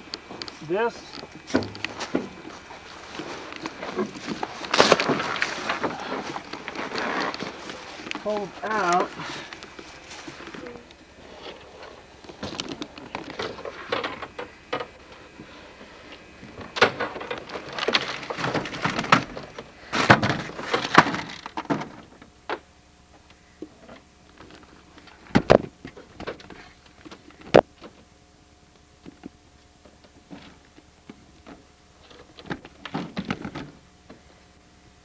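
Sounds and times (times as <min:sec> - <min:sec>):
camping gear rustling and clattering: 0:00.0 - 0:22.4.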